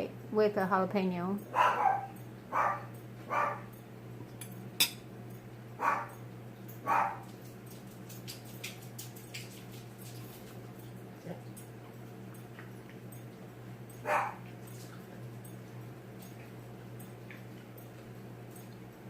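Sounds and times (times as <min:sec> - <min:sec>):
dog barking: 0:01.5 - 0:03.7, 0:05.8 - 0:06.2, 0:06.8 - 0:07.3, 0:14.0 - 0:14.5.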